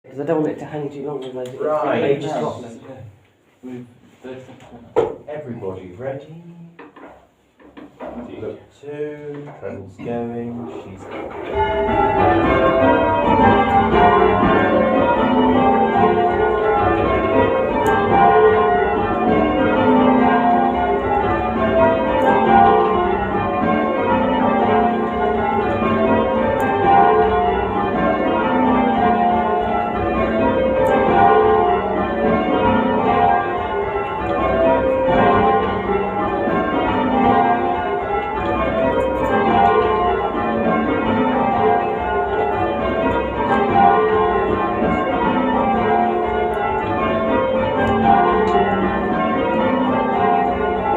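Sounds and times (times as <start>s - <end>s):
church bells ringing in rounds: 10.8s - 50.9s.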